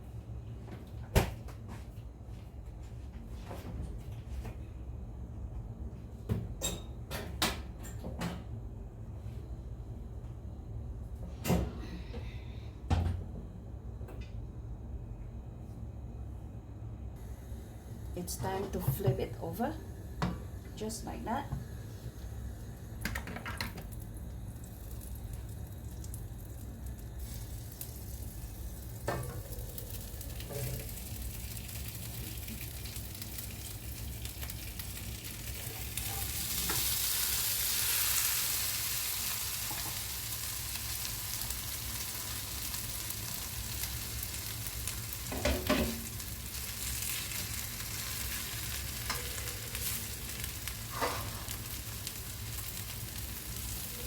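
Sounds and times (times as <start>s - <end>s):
hash brown sizzling in a pan: 23.8s - 54.0s.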